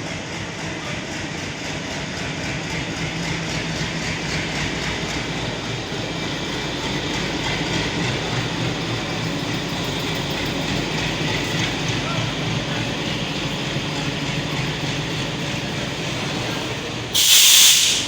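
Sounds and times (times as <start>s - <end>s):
freight train rumbling past: 0.0s - 18.0s.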